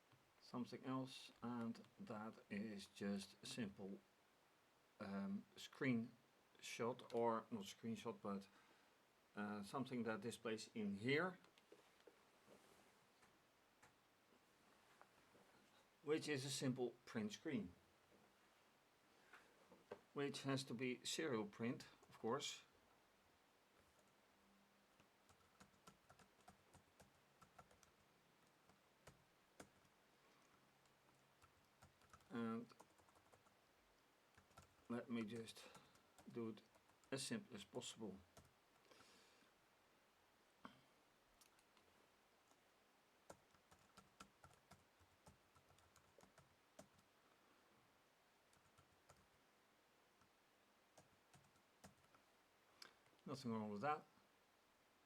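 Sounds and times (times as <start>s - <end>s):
typing on keyboard: 25.0s - 29.9s, 30.8s - 33.6s, 34.3s - 37.1s, 43.3s - 47.1s, 48.5s - 49.3s, 51.0s - 52.2s.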